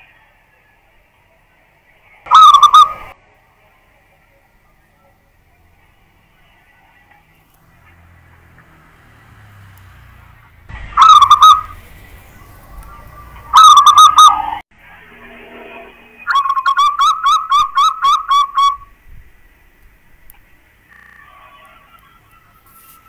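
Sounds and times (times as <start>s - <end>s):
dove cooing: 2.3s - 3.1s, 10.9s - 11.9s, 13.0s - 14.4s.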